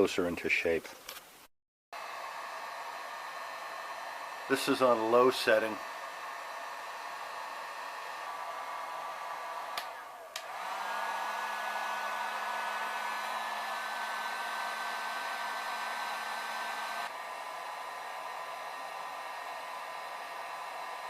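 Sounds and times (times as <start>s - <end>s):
heat gun blowing with a whine: 2.0s - 21.0s
heat gun click: 8.5s - 10.8s.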